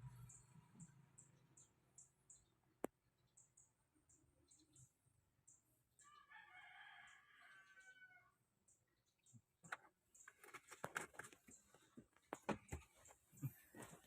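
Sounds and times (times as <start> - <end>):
faint rooster crowing: 6.0 - 8.4.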